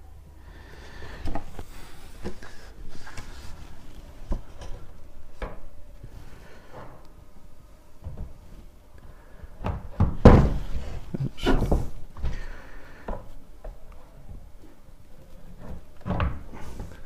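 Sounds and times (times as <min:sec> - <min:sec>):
wooden wardrobe door knocks: 0:09.6 - 0:10.7.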